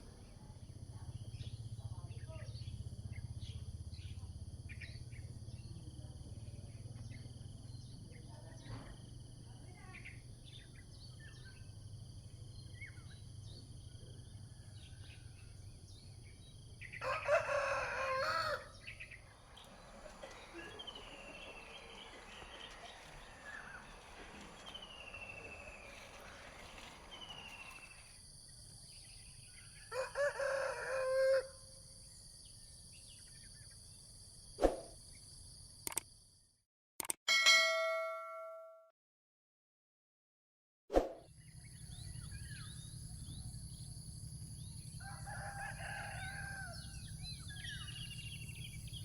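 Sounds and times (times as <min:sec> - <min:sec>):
insect drone: 0:00.1 - 0:36.6, 0:41.3 - 0:49.0
rooster crowing: 0:17.0 - 0:19.1, 0:29.7 - 0:31.7, 0:45.0 - 0:47.3
small birds chirping: 0:18.7 - 0:29.9, 0:41.3 - 0:49.0.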